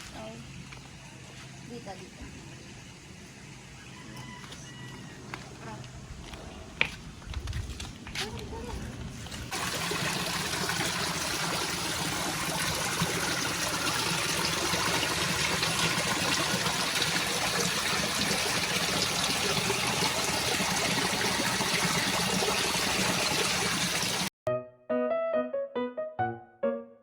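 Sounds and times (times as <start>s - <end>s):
running water: 8.6s - 24.3s.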